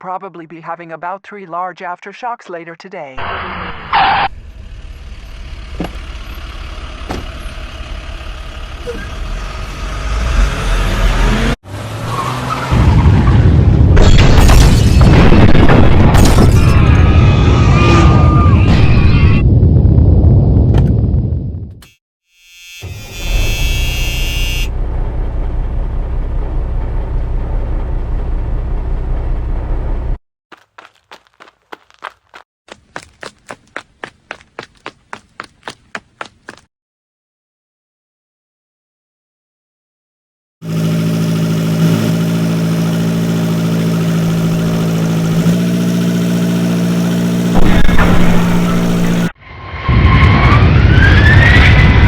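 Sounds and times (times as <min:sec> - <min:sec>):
rough engine rumble: 0:04.3 - 0:11.2, 0:24.7 - 0:30.2, 0:40.6 - 0:49.4
vehicle engine running: 0:04.4 - 0:10.3, 0:40.6 - 0:49.3
deep rumble: 0:18.5 - 0:21.7, 0:47.5 - 0:49.3
high buzzing tone: 0:21.8 - 0:24.8.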